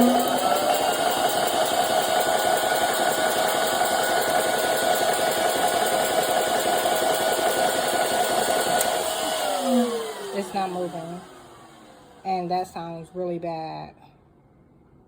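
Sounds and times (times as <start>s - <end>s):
person talking: 0.0s - 0.5s, 9.6s - 11.3s, 12.3s - 14.0s
air compressor running: 0.0s - 12.2s.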